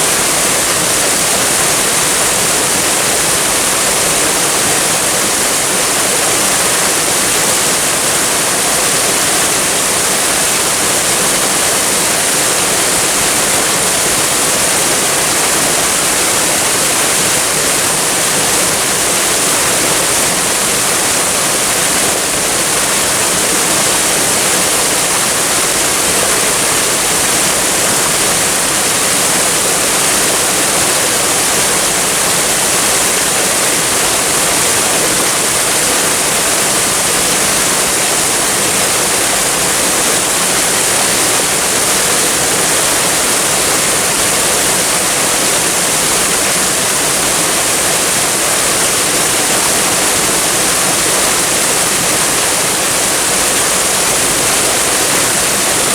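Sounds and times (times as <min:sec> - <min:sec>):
waterfall rushing: 0:00.0 - 0:55.9.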